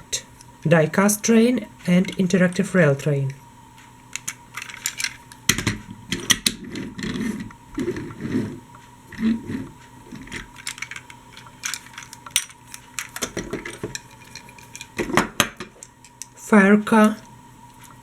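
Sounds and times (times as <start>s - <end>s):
toy trains clicking and knocking: 4.1s - 8.0s, 10.2s - 16.3s
toy trains rubbing and rolling: 6.1s - 15.1s.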